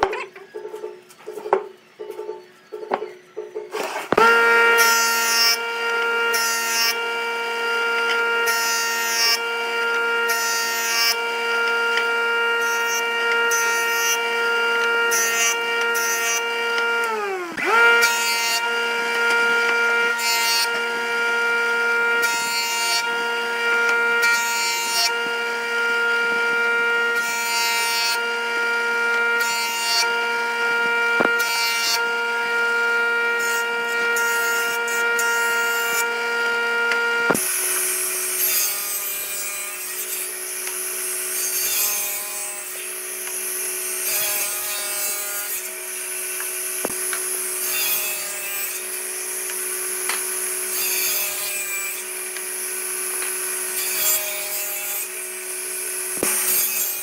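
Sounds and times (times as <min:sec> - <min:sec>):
wood lathe motor whine: 0:00.0 - 0:57.0
cutting tool scraping wood: 0:02.9 - 0:20.9, 0:36.9 - 0:55.1, 0:56.1 - 0:57.0.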